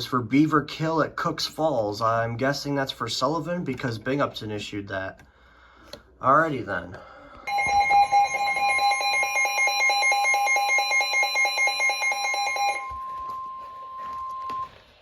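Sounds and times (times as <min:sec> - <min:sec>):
steady alarm tone: 0:07.4 - 0:15.0.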